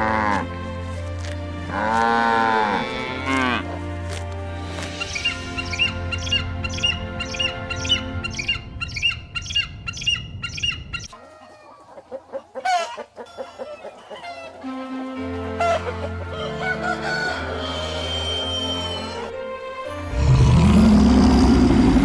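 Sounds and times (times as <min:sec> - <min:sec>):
background music: 0:00.0 - 0:09.6, 0:13.3 - 0:22.0
chicken calling and clucking: 0:05.0 - 0:19.3.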